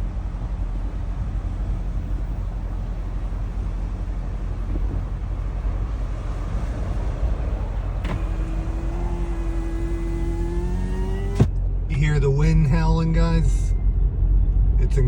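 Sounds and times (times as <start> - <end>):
wind on microphone: 4.5 - 9.4.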